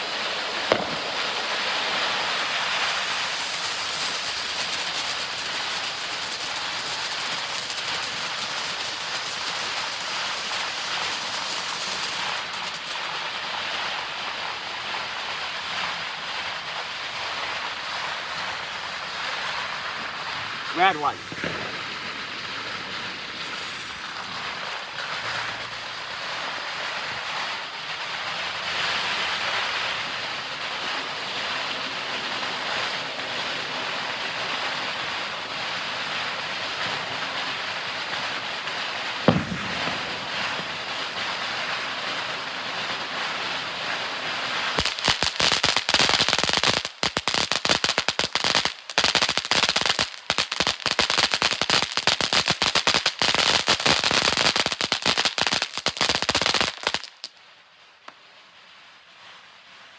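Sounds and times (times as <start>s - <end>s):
firework crackling: 0.0s - 59.9s
firework fountain hissing: 0.0s - 59.9s
sharp bang: 0.7s - 1.4s, 39.3s - 40.3s.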